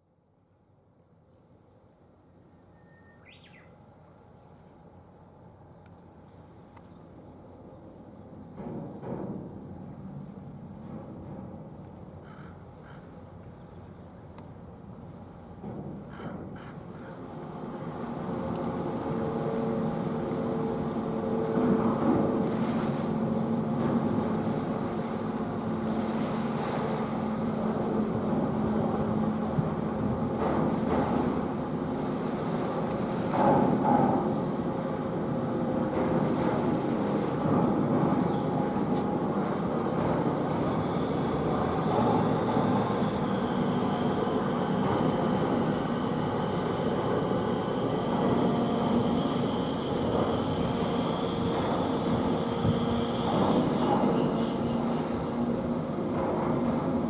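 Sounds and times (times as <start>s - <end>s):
machinery droning hum: 9.6s - 57.0s
wind on microphone: 17.9s - 57.0s.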